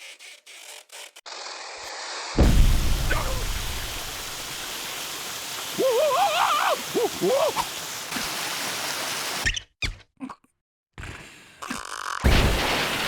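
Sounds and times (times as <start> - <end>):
short cries: 5.8 - 7.7
warbling wordless voice: 5.8 - 7.8.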